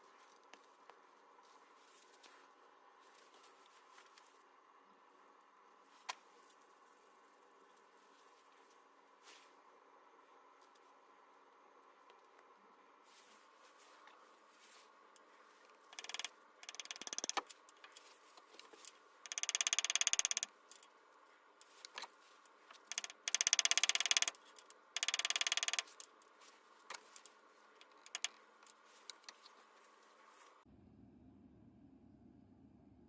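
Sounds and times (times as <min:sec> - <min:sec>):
ratchet wrench clicking: 0:15.9 - 0:17.5, 0:19.3 - 0:20.8, 0:22.8 - 0:26.1, 0:27.8 - 0:28.4.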